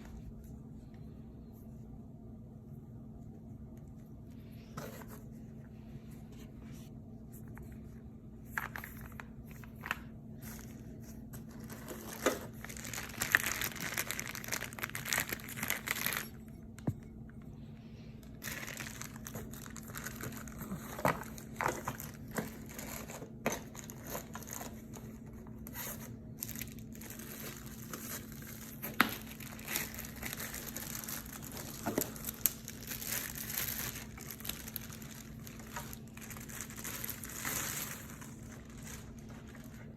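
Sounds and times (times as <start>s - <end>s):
steady low hum: 0.0s - 39.9s
packaging crinkling and rustling: 7.4s - 17.0s, 18.2s - 39.9s.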